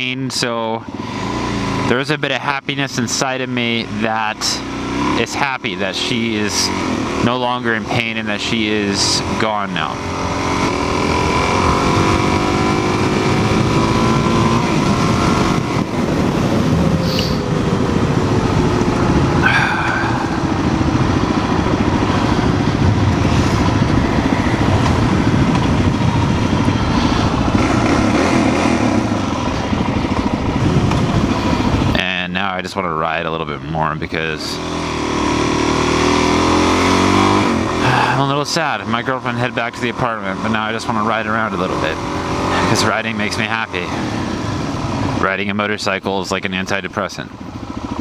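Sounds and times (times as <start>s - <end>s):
motorcycle engine running: 0.0s - 48.0s
wind rush: 10.2s - 32.0s.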